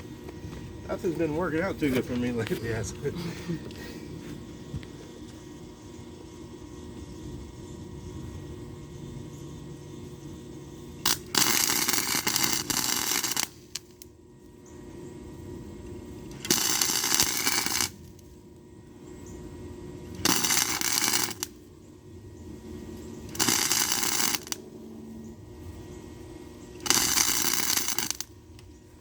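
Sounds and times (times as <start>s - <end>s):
electric welder welding: 0.0s - 29.0s.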